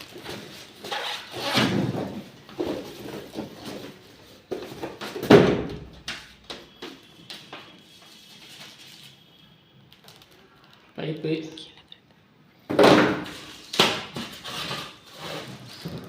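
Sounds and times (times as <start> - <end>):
handling knocks and scrapes: 0.0 - 5.4.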